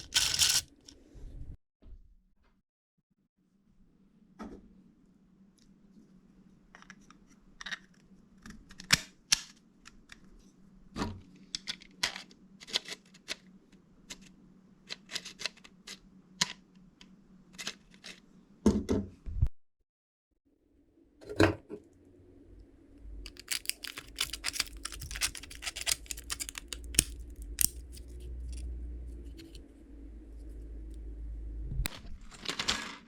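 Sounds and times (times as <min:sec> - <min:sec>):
faint low hum: 0:20.8 - 0:33.0
plastic parts clicking together: 0:23.3 - 0:28.6.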